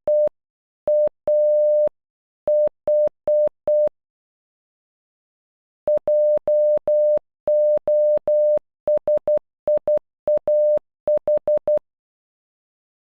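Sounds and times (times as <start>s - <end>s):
morse code beeps: 5.9s - 11.8s.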